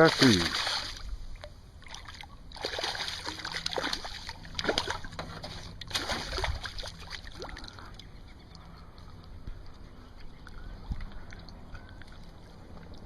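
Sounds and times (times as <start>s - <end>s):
water splashing and sloshing: 0.0s - 13.0s.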